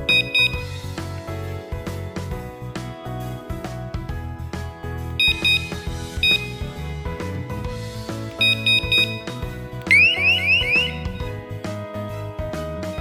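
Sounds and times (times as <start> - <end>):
electronic alarm beeps: 0.0 - 0.8, 5.2 - 6.6, 8.3 - 11.3
background music: 5.1 - 13.0.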